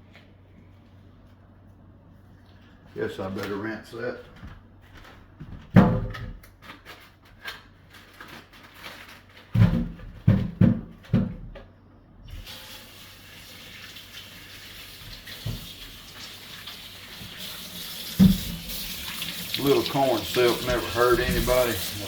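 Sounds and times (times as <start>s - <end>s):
kitchen tap running: 12.3s - 22.0s.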